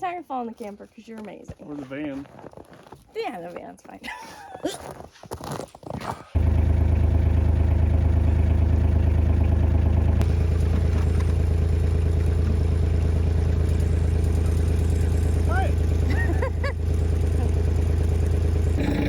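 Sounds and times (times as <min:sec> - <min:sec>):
engine idling: 0:06.4 - 0:19.0.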